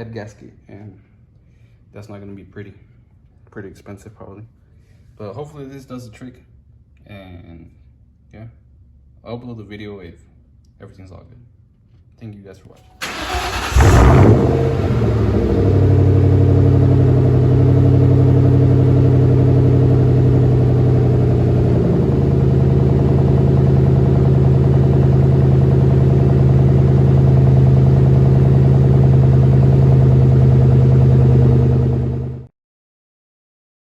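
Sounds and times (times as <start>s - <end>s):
car engine idling: 13.0s - 32.5s.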